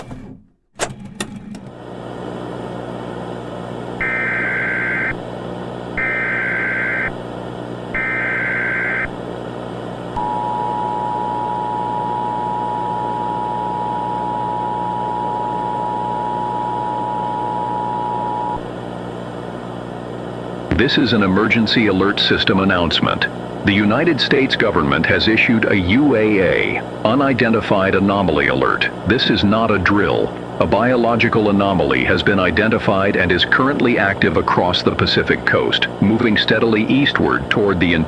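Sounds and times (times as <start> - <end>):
static and hum: 1.4 - 38.0
two-tone attention signal: 10.2 - 18.6.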